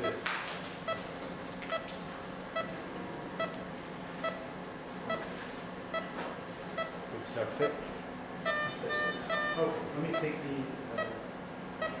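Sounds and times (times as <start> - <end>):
steady equipment hum: 0.0 - 12.0
patient monitor beeping: 0.8 - 1.1, 1.7 - 2.8, 4.2 - 4.4, 5.1 - 5.3, 5.9 - 7.0, 7.6 - 11.2, 11.8 - 12.0.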